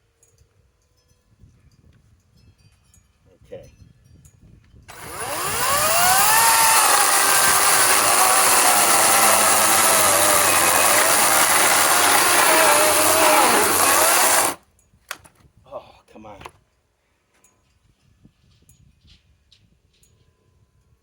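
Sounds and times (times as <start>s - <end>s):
electric chainsaw cutting: 4.9s - 14.6s.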